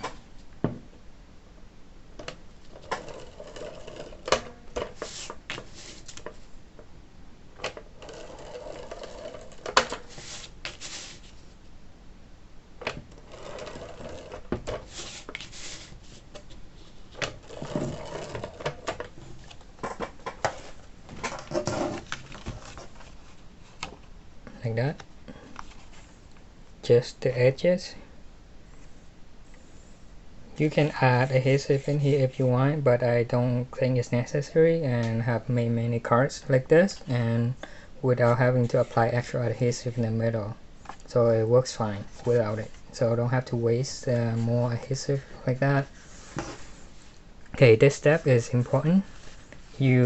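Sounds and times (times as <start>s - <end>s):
tape and paper rubbing: 4.9s - 6.4s, 8.1s - 11.6s, 13.2s - 18.5s.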